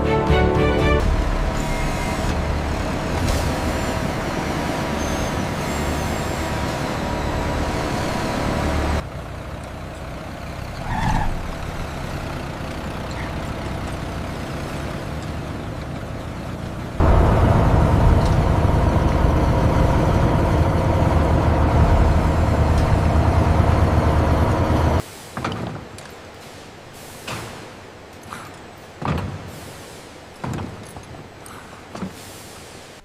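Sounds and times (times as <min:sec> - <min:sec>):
heavy vehicle engine running: 0:00.0 - 0:25.0.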